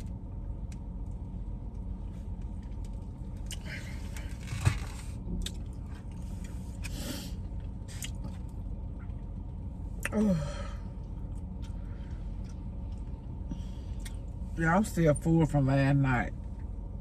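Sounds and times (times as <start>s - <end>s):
car cabin hum: 0.0s - 17.0s
person chewing food: 3.4s - 3.7s, 5.3s - 9.3s, 11.0s - 14.4s.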